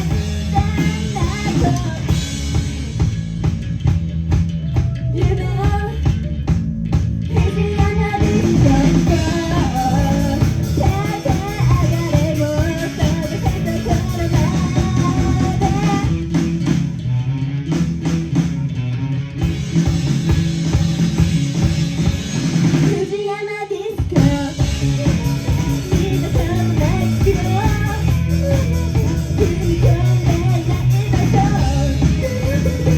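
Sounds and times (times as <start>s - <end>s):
person singing: 0.0s - 2.4s, 7.3s - 16.3s, 22.9s - 32.9s
bass guitar: 0.0s - 23.1s, 24.0s - 32.9s
drum kit: 0.0s - 23.2s, 24.0s - 32.9s
electric guitar: 0.0s - 23.2s, 23.9s - 32.9s.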